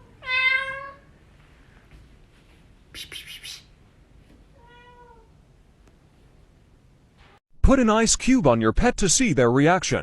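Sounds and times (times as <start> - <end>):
cat meowing: 0.0 - 1.1, 4.5 - 5.4.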